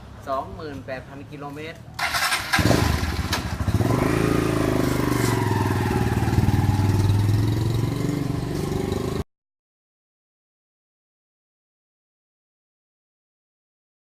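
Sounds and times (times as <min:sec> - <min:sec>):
motorcycle engine revving: 0:02.0 - 0:09.2.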